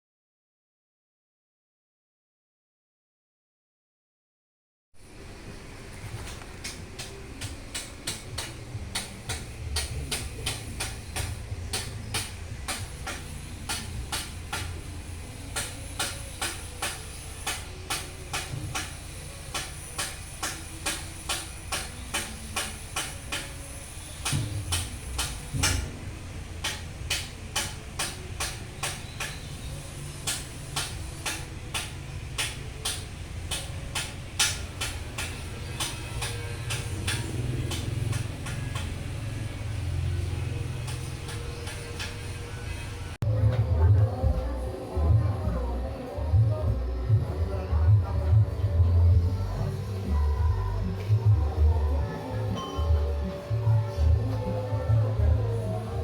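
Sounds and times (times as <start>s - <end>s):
low motor hum: 20.6s - 56.0s
sharp machine clicks: 26.6s - 39.5s.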